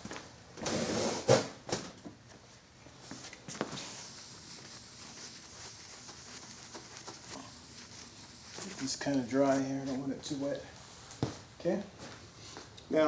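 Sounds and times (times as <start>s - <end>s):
cloth wiping metal surface: 3.8s - 10.0s.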